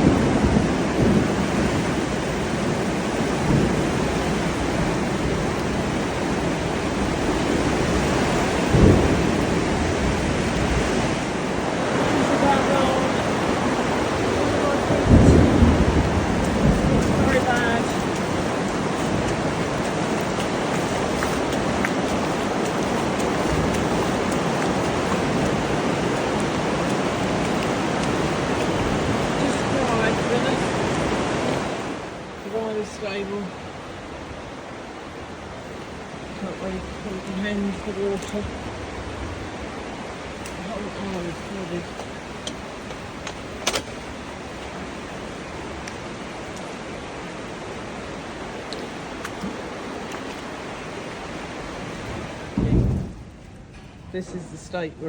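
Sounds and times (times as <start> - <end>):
heavy rain pouring: 0.0 - 55.0
low rumble: 52.0 - 55.0.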